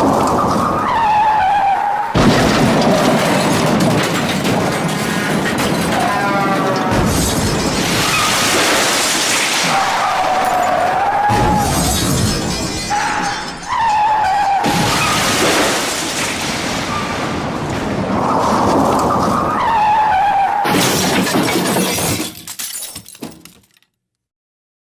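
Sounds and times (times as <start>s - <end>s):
crash of breaking glass and metal: 2.1s - 19.5s, 20.6s - 23.9s
crunching and smashing: 2.2s - 19.2s, 20.7s - 23.9s
tyres squealing: 5.1s - 7.2s.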